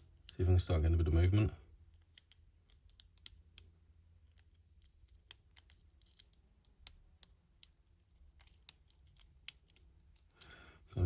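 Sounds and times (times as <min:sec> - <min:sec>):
lock pick clicking in lock: 0:02.0 - 0:03.7, 0:04.3 - 0:10.6.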